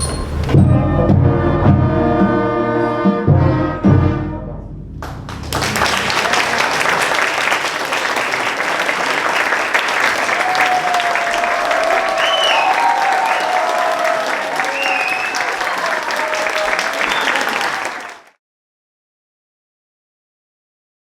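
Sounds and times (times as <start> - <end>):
concert band playing: 0.4 - 4.7
audience applause: 5.0 - 18.4.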